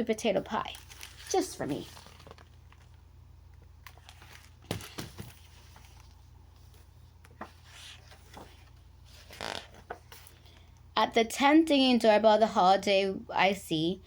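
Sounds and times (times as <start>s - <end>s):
steady low hum: 0.0s - 14.0s
paper page turning: 0.6s - 3.0s, 3.8s - 10.4s.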